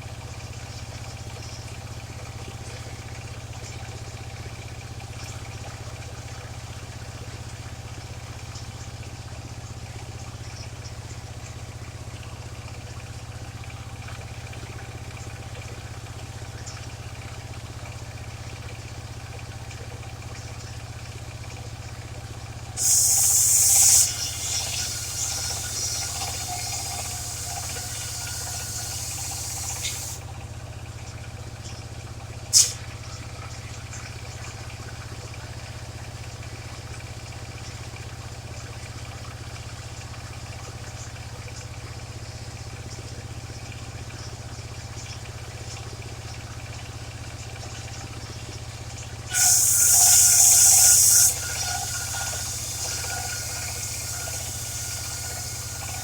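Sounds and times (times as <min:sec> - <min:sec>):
sawmill engine running: 0:22.0 - 0:30.4, 0:48.6 - 0:56.0.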